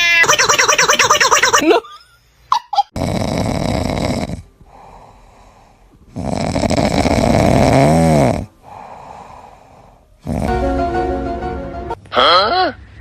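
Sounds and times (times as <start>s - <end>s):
loud snoring: 3.0s - 4.9s, 6.1s - 9.2s, 10.2s - 10.7s.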